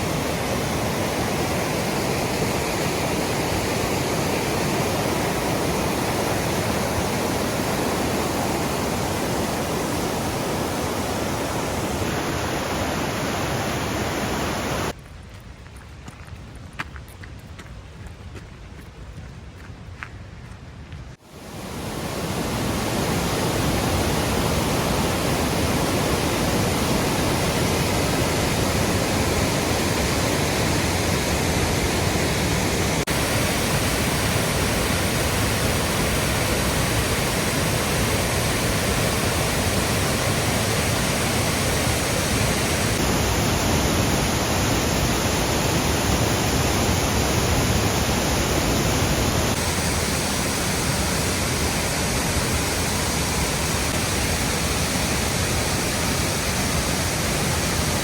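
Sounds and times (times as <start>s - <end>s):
waterfall rushing: 0.0s - 15.0s, 21.2s - 58.0s.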